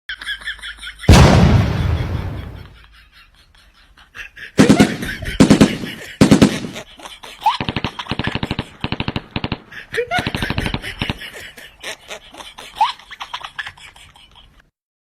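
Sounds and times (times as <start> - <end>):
loud bang: 1.1 - 2.8
sharp bangs in bursts: 1.1 - 2.8, 4.6 - 6.9, 7.5 - 11.2.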